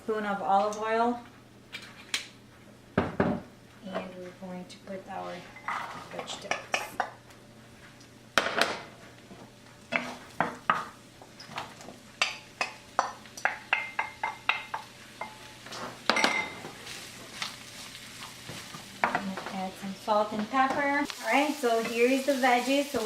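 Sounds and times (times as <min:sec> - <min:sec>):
vegetables sizzling: 0:08.7 - 0:23.0.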